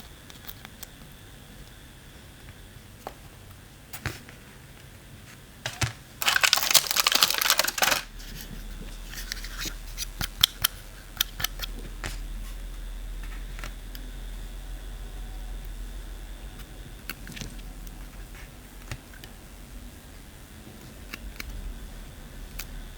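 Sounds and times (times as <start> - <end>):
low steady hum: 0.0 - 22.9
packaging crinkling: 6.2 - 10.4.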